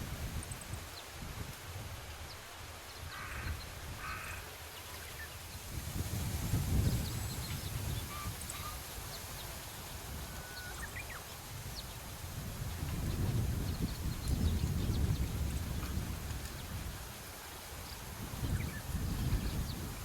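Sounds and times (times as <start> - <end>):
wind rumbling on microphone: 0.0 - 20.0
small birds chirping: 6.8 - 15.8, 17.8 - 20.0.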